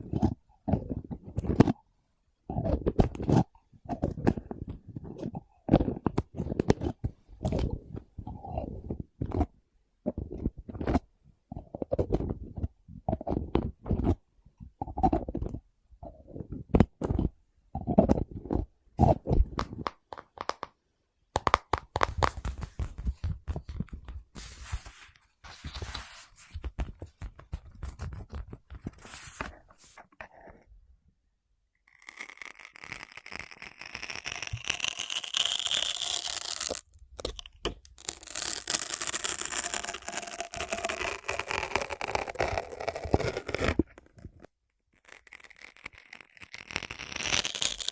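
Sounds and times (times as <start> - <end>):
objects rubbing and scraping: 22.2 - 30.7.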